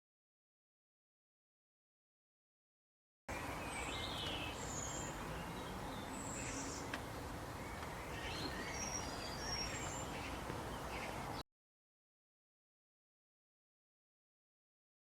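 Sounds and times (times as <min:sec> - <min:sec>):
outdoor background hiss: 0:03.3 - 0:11.4.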